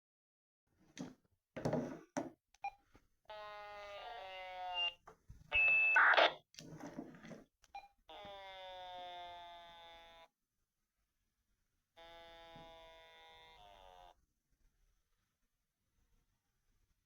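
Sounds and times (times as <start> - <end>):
high beeps: 4.8 - 5.0, 5.6 - 6.4
radio crackles: 5.6 - 6.4
radio noise bursts: 6.0 - 6.4.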